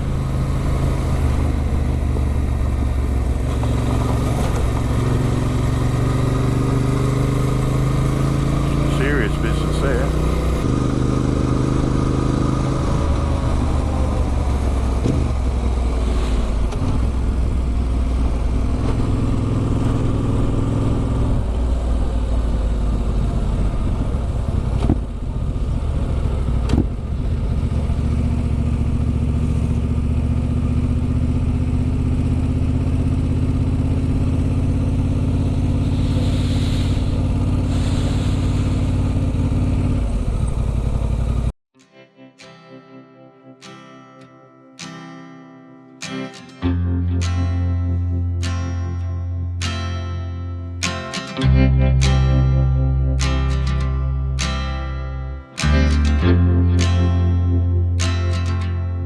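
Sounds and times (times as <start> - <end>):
motorcycle engine running: 0.0 - 41.5.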